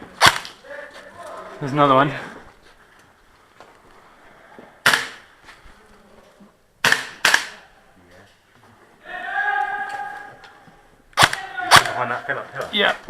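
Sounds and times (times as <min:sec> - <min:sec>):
airsoft gun shots: 0:00.2 - 0:00.6, 0:04.8 - 0:05.2, 0:06.8 - 0:07.6, 0:11.2 - 0:12.0.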